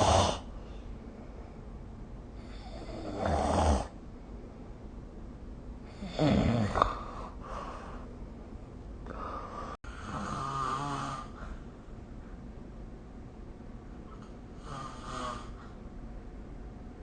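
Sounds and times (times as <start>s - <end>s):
person snoring: 0.0s - 0.5s, 2.4s - 4.0s, 5.9s - 7.4s, 9.1s - 11.5s, 14.6s - 15.8s
low hum: 6.8s - 10.0s, 11.2s - 14.6s, 15.4s - 17.0s.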